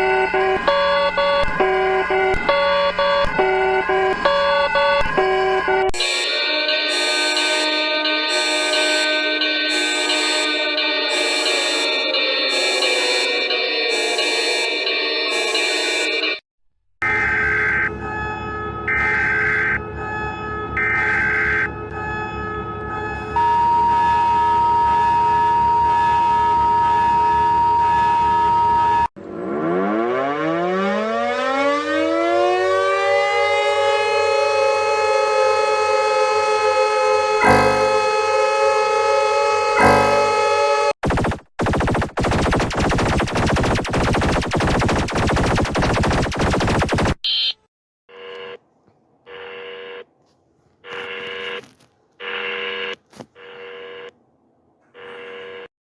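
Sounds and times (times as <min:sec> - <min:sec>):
emergency siren: 0:00.0 - 0:16.4, 0:17.0 - 0:47.6
short high beep: 0:37.4 - 0:38.0, 0:47.2 - 0:47.6
electronic alert tone: 0:37.4 - 0:38.2, 0:39.8 - 0:47.6
burst of noise: 0:41.0 - 0:47.2.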